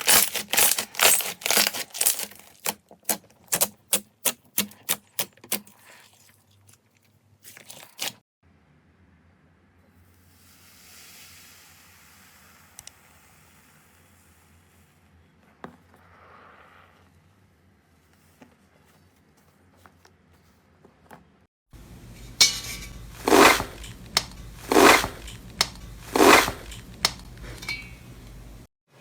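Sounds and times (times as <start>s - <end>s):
slime squishing and rustling: 0.0s - 3.2s.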